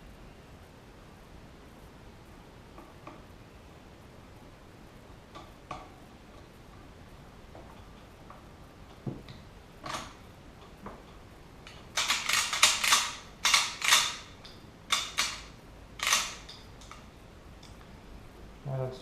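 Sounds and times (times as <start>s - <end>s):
rifle parts clicking and scraping: 11.7s - 17.0s.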